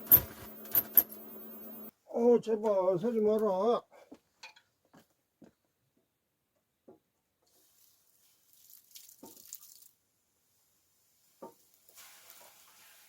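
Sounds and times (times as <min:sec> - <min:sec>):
water pouring and splashing: 0:07.6 - 0:10.0, 0:11.7 - 0:13.0.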